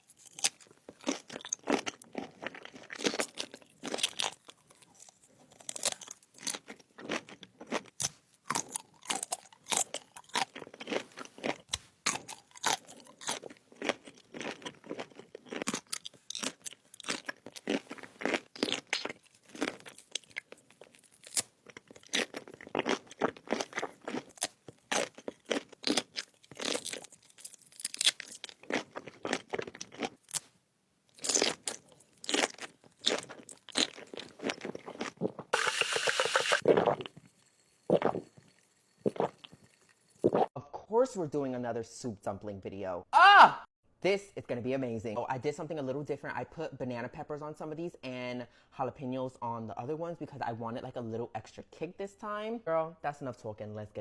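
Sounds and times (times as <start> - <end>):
crunching and chewing crisp food: 0.0 - 30.5, 31.1 - 40.5.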